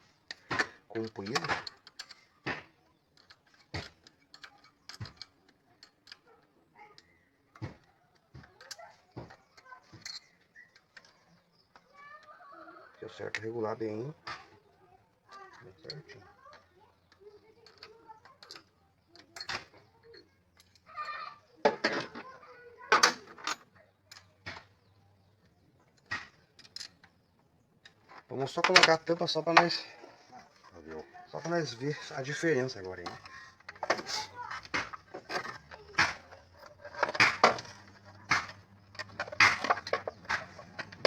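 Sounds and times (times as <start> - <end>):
hand tools clicking on metal: 0.3 - 12.3, 26.0 - 27.2, 31.7 - 41.0.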